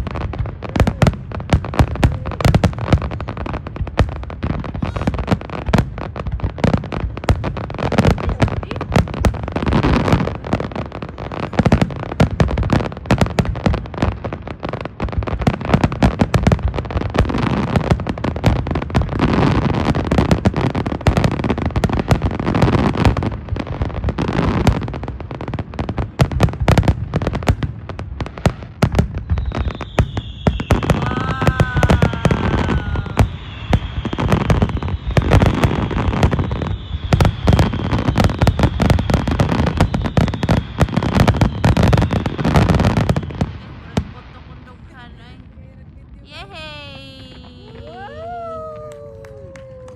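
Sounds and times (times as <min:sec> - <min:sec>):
fireworks bangs and crackling: 0:00.0 - 0:49.9
high falling whistle: 0:29.3 - 0:40.6.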